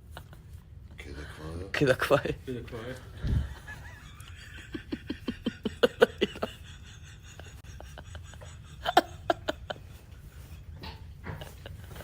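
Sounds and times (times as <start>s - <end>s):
stifled breathy laughter: 3.1s - 12.0s.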